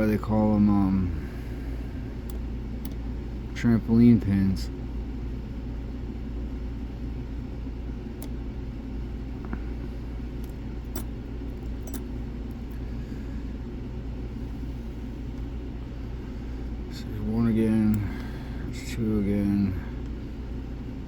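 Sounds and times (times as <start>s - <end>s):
steady low hum: 0.0s - 21.0s
lock pick clicks: 10.4s - 12.1s.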